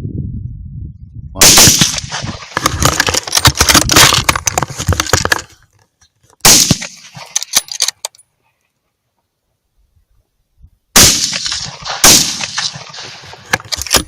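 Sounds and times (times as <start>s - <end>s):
rifle shots with echoes: 1.4s - 2.7s, 6.4s - 7.3s, 11.0s - 13.4s.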